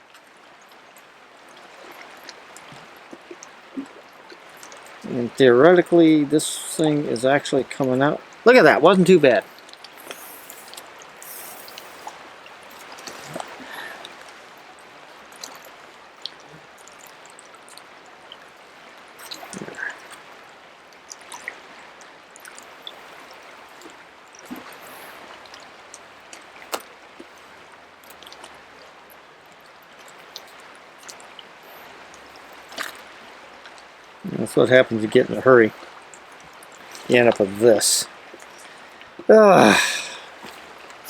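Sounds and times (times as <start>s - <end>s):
river water flowing: 0.0s - 41.0s
fishing line clicks and rustles: 0.1s - 5.0s, 9.4s - 14.5s, 15.2s - 18.5s, 19.2s - 33.9s.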